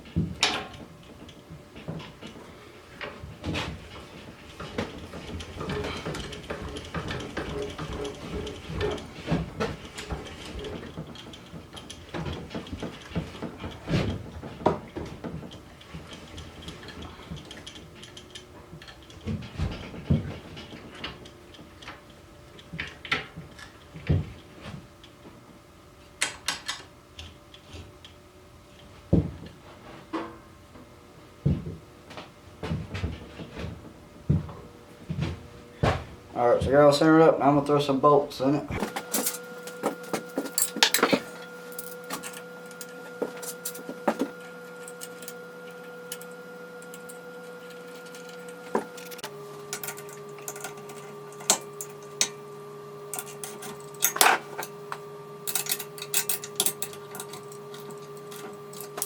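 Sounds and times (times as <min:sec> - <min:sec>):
metal vise clunks and scrapes: 0:00.4 - 0:00.8.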